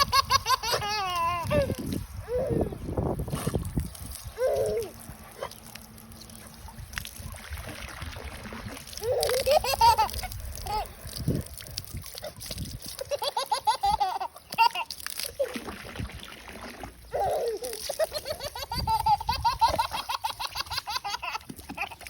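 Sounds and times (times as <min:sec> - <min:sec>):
person laughing high-pitched: 0:00.0 - 0:02.9, 0:04.4 - 0:05.0, 0:08.9 - 0:11.2, 0:12.8 - 0:15.6, 0:17.1 - 0:22.0
water splashing: 0:03.1 - 0:22.0.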